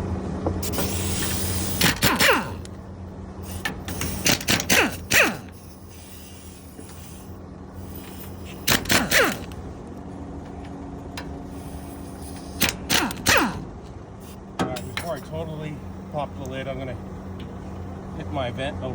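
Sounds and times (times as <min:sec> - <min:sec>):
pneumatic impact wrench hammering: 0:00.6 - 0:02.8, 0:03.4 - 0:09.6, 0:11.2 - 0:15.4.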